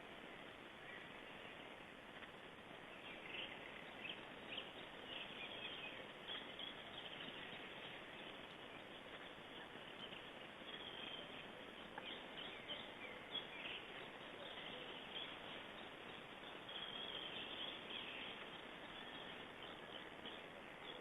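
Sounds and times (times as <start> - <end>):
faint outdoor hiss: 0.0 - 21.0
small birds chirping: 0.0 - 21.0.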